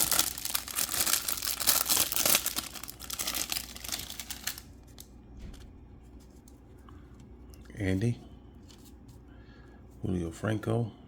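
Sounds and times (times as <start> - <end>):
plastic wrapper crinkling and tearing: 0.0 - 5.6.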